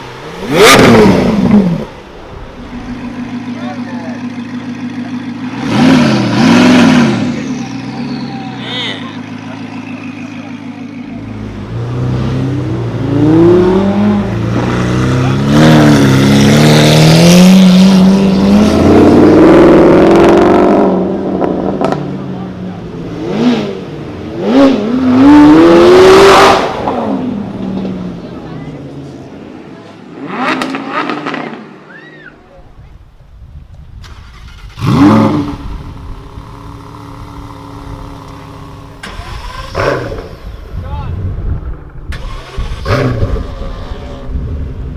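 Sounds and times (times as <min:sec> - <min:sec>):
car engine revving hard: 0:00.0 - 0:02.0, 0:05.5 - 0:08.1, 0:11.1 - 0:22.3, 0:23.0 - 0:27.7, 0:30.1 - 0:31.8, 0:34.1 - 0:40.6, 0:42.1 - 0:44.8
car engine idling: 0:00.0 - 0:11.9, 0:35.6 - 0:42.8.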